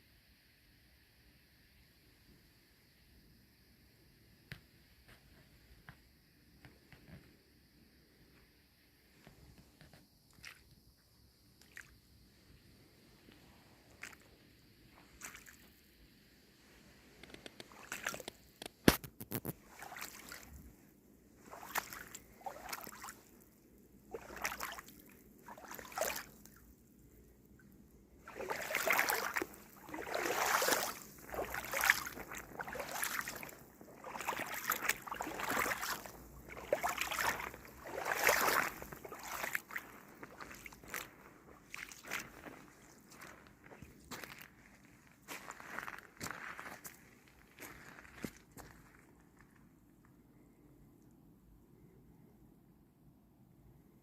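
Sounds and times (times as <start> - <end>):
boots sloshing through water: 10.3 - 10.7, 11.6 - 12.0, 13.4 - 14.4, 15.0 - 15.8, 17.2 - 26.6, 28.2 - 48.9.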